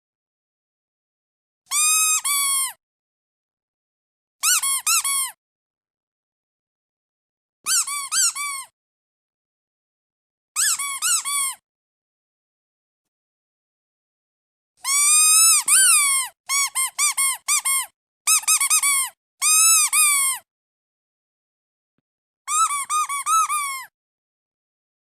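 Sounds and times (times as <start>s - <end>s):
rubber duck squeaking: 1.7s - 2.8s, 4.4s - 5.4s, 7.7s - 8.7s, 10.6s - 11.6s, 14.8s - 20.4s, 22.5s - 23.9s.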